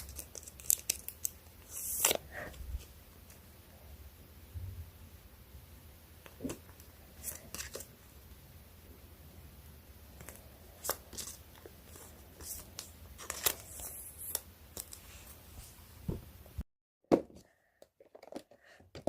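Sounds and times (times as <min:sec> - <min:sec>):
plastic wrapping crinkling: 0:00.0 - 0:02.9.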